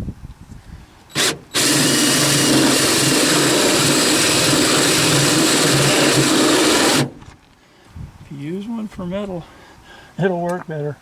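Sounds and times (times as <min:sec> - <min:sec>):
drill motor running: 0:01.1 - 0:07.1
hole saw cutting sheet metal: 0:01.1 - 0:07.1.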